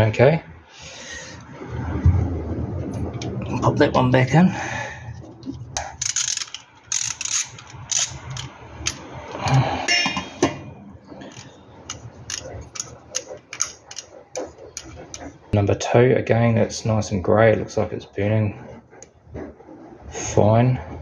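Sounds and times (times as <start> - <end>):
ratchet wrench clicking: 5.8 - 9.0, 11.4 - 14.1.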